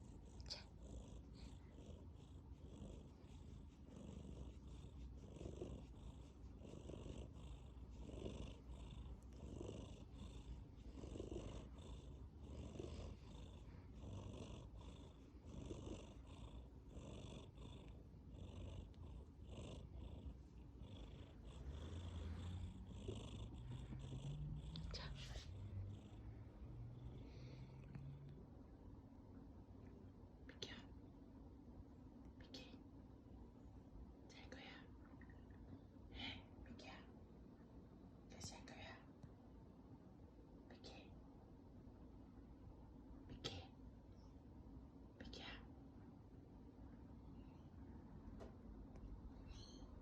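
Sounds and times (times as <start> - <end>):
cat soft snore: 0.0 - 28.5
cat purring: 0.0 - 28.7.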